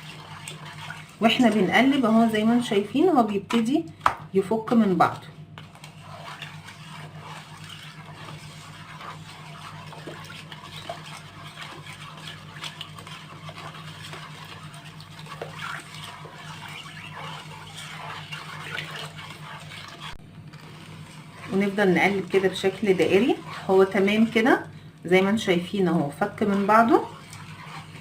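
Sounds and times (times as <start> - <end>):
steady low hum: 0.0 - 28.0
wet sloshing of stirred mixture: 0.0 - 28.0.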